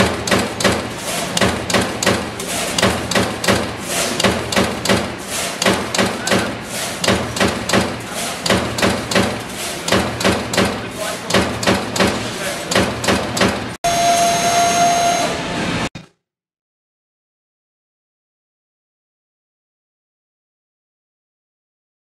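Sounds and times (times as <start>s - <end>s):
punch press punching sheet metal: 0.0s - 13.8s.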